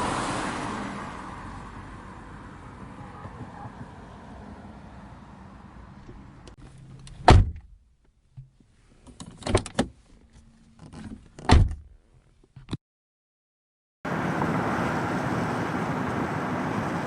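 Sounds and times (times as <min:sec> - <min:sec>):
car door heavy thunk: 0:07.2 - 0:07.7, 0:11.4 - 0:11.8.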